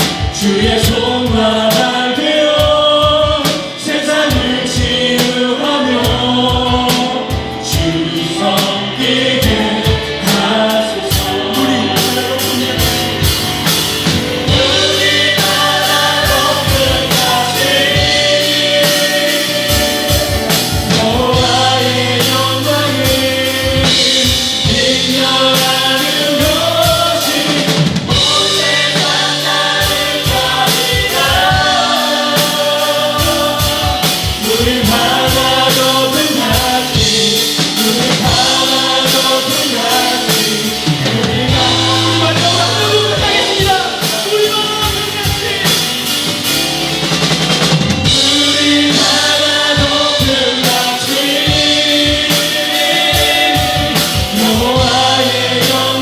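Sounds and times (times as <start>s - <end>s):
bass: 0.0s - 56.0s
drum kit: 0.0s - 56.0s
keyboard: 0.0s - 56.0s
voices singing a praise song: 0.0s - 56.0s.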